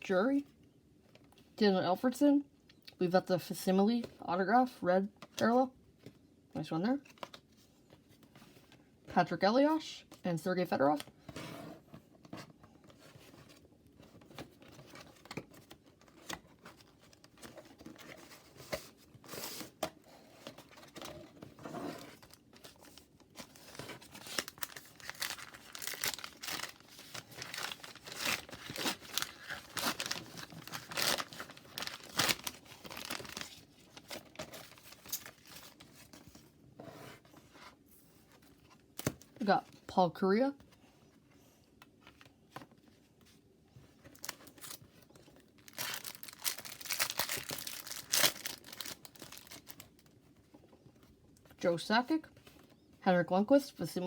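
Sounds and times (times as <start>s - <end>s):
card pack wrapper crinkling: 22.2s - 35.8s, 45.6s - 50.0s.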